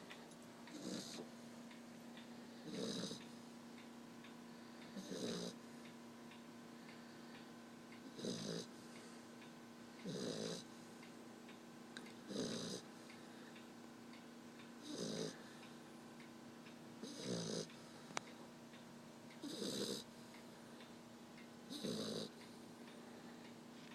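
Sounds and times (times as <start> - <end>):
puppy snoring: 0.7 - 1.3, 2.5 - 3.3, 4.9 - 5.7, 8.0 - 9.0, 10.0 - 10.7, 12.2 - 12.9, 14.8 - 15.5, 17.0 - 17.8, 19.4 - 20.2, 21.7 - 22.4.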